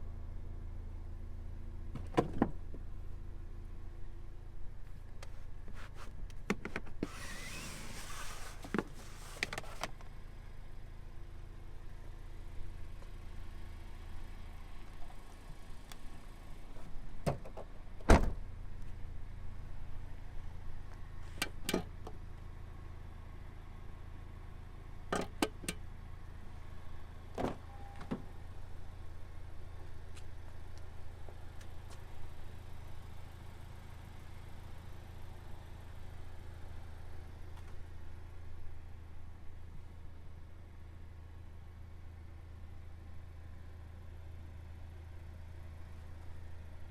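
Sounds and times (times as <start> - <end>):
car engine idling: 10.0 - 46.9.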